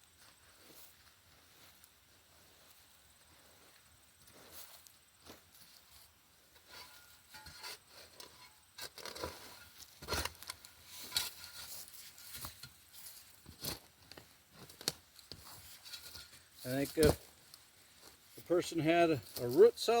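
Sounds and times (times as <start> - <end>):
digging in garden soil: 4.3 - 20.0.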